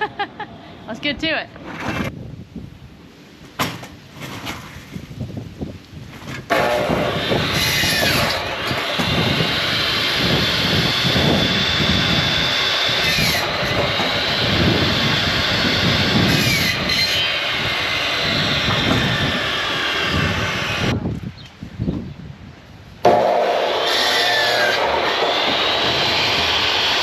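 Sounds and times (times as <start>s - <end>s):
band sawmill cutting: 6.5s - 21.0s, 23.0s - 27.0s.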